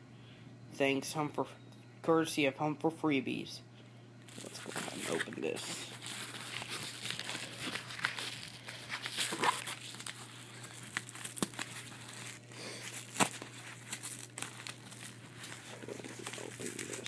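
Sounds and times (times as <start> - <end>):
packaging crinkling: 4.3 - 17.0.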